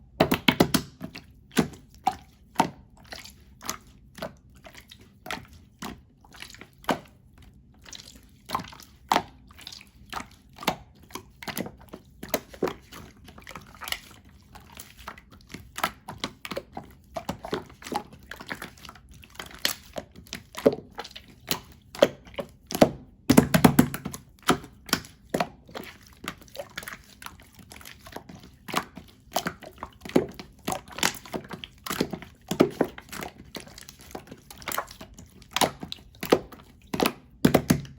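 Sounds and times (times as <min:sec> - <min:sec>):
slime squelching: 0:00.1 - 0:37.9
sticky slime popping and clicking: 0:21.5 - 0:25.2, 0:35.6 - 0:37.9.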